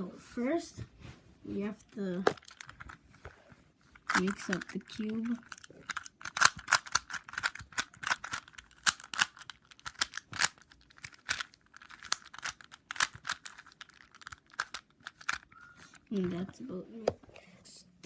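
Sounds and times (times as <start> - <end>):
puzzle cube plastic clicks: 4.0 - 16.5.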